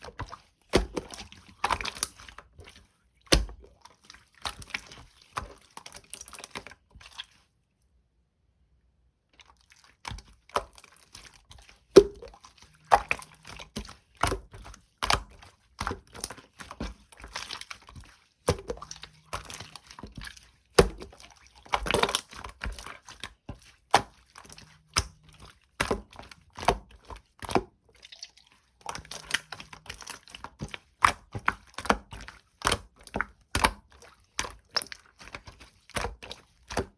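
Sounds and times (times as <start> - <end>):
slime squishing and popping: 10.0 - 36.9.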